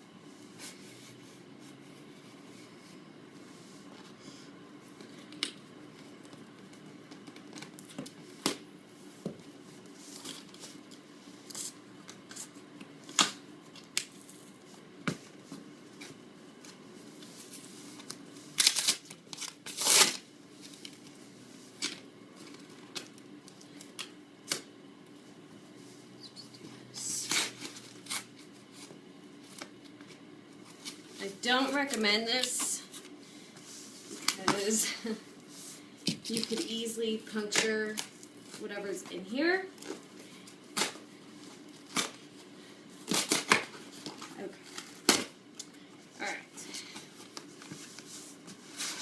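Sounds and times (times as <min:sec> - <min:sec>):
packaging tearing: 0:18.6 - 0:20.2.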